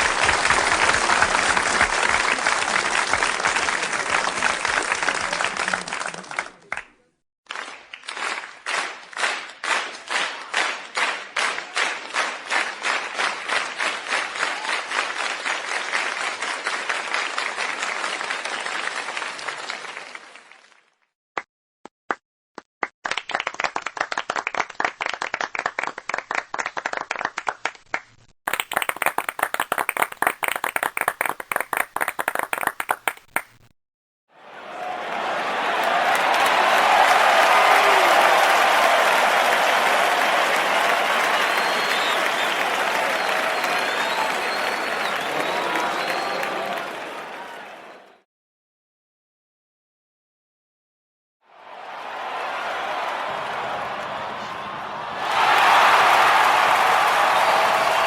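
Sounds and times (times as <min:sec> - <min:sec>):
crowd applauding: 0:00.0 - 0:06.9, 0:07.5 - 0:20.8, 0:23.1 - 0:33.6, 0:34.4 - 0:48.2, 0:51.5 - 0:58.0
small group clapping: 0:00.0 - 0:21.5, 0:23.0 - 0:33.7, 0:34.6 - 0:48.2, 0:51.6 - 0:58.0
lone claps: 0:28.5 - 0:33.6, 0:34.8 - 0:47.5.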